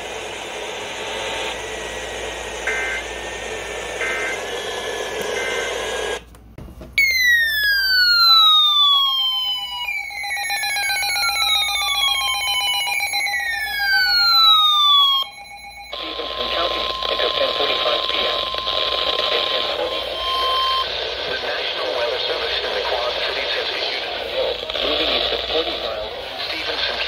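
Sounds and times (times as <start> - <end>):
emergency alert tone sweeps: 0.7 - 6.2, 7.0 - 26.8
short beeping bursts: 5.4 - 5.8, 10.0 - 21.4
radio static: 15.9 - 27.0.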